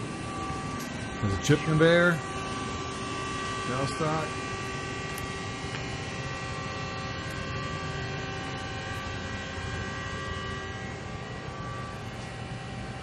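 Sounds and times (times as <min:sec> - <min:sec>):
machinery hum with whining tones: 0:00.0 - 0:13.0.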